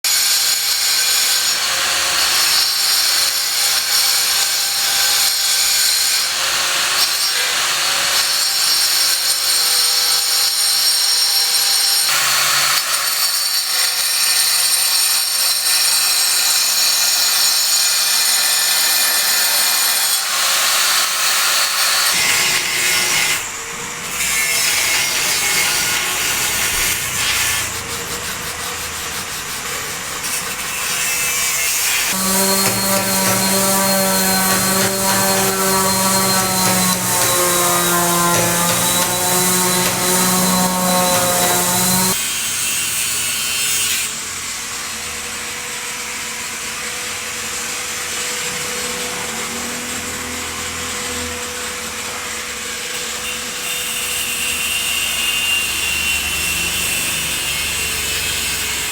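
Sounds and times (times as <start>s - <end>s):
rasping cutting or sanding tool: 24.1s - 42.2s.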